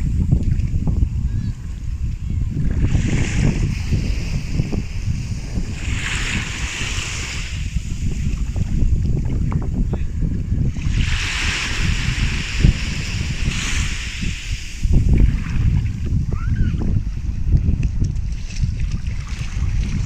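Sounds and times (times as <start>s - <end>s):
wind buffeting microphone: 0.0s - 20.0s
waves washing on beach: 1.8s - 9.2s, 10.5s - 17.2s.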